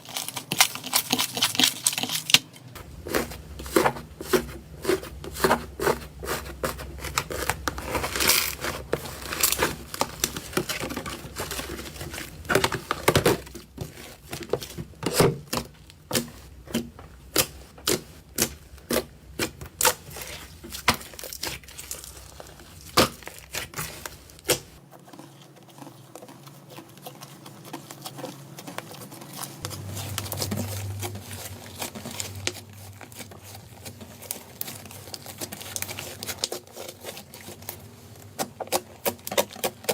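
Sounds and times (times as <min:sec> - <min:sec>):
slime crackling and popping: 0:00.0 - 0:24.8
slime squishing: 0:00.0 - 0:39.9.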